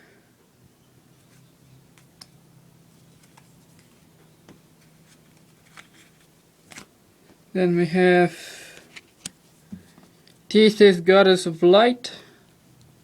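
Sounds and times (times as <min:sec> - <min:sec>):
trading cards handled and set down: 0:03.0 - 0:06.9.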